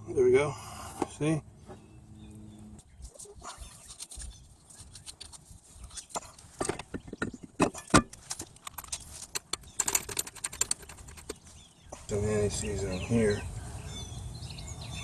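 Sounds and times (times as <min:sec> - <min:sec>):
metal parts clicking together: 0:07.7 - 0:11.4.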